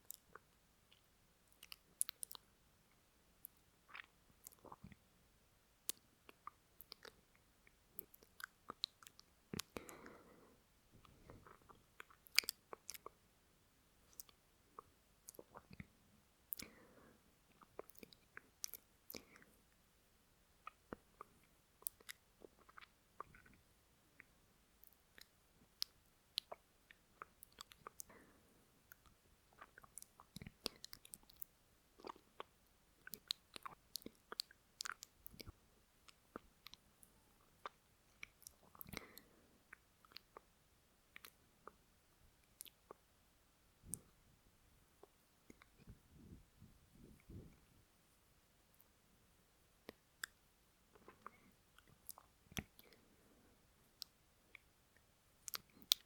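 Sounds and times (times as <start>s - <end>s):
wet lip smacks and mouth clicks: 0.0s - 2.5s, 3.4s - 5.0s, 5.9s - 10.2s, 11.0s - 13.2s, 14.1s - 15.9s, 17.5s - 19.5s, 20.6s - 23.6s, 24.2s - 28.2s, 28.9s - 40.5s, 41.1s - 41.8s, 42.4s - 43.0s, 45.0s - 46.0s, 49.8s - 53.0s, 55.4s - 56.0s
soft breaths: 9.6s - 11.9s, 14.0s - 18.4s, 19.0s - 19.8s, 27.7s - 29.1s, 38.5s - 39.8s, 43.8s - 48.0s, 50.9s - 54.0s.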